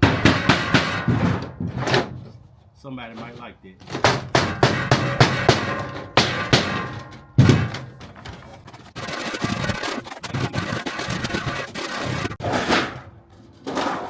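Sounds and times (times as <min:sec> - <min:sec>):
rubber mallet striking sheet metal: 0:00.0 - 0:02.1, 0:03.9 - 0:08.1.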